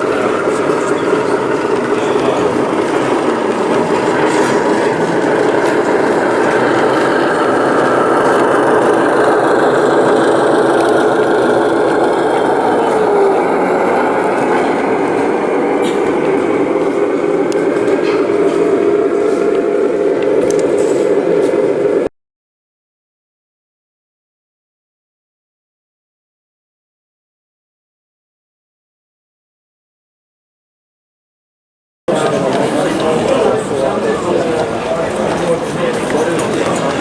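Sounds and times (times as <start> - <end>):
model train running on track: 0.0 - 22.1, 32.1 - 37.0.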